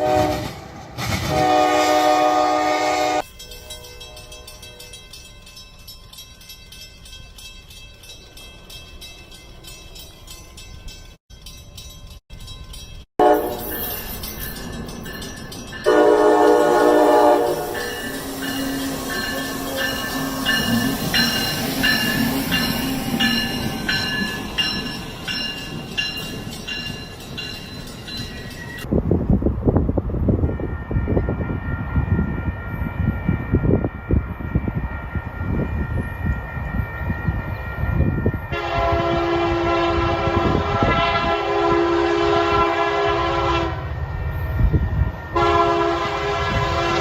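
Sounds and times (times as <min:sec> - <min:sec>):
locomotive horn: 0:00.0 - 0:03.3, 0:13.2 - 0:13.8, 0:15.9 - 0:19.1, 0:38.5 - 0:43.9, 0:45.4 - 0:47.0
steady train sound: 0:00.0 - 0:47.0.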